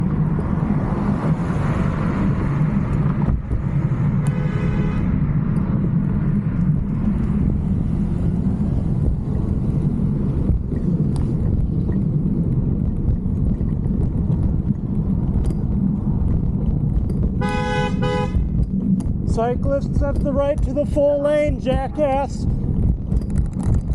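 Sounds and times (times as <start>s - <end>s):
traffic noise: 0.0s - 23.9s
wind rumble: 0.0s - 23.9s
car horn honking: 4.3s - 5.2s, 17.4s - 18.5s.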